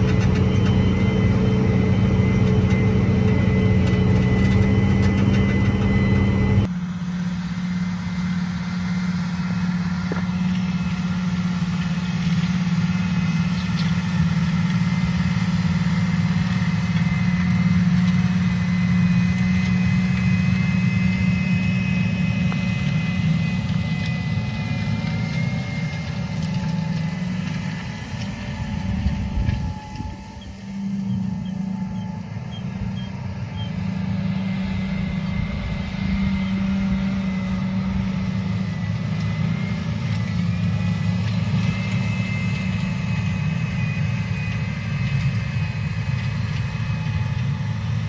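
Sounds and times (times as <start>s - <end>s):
tractor engine running: 0.0s - 6.7s.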